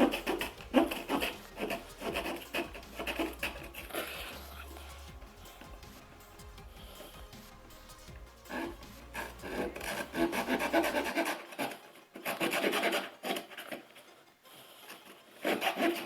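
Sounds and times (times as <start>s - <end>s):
saw blade cutting wood: 0.0s - 6.1s, 8.5s - 13.9s, 14.9s - 16.0s.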